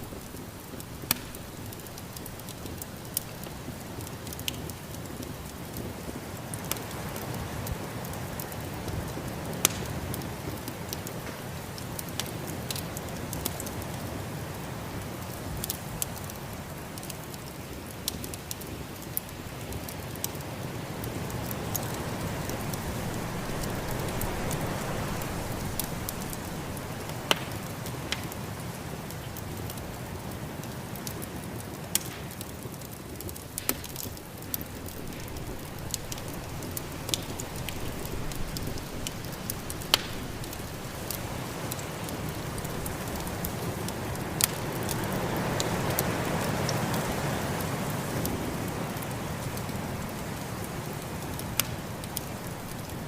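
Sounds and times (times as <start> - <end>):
wood fire crackling and popping: 0.0 - 53.0
snowstorm wind: 19.2 - 28.7, 32.6 - 53.0.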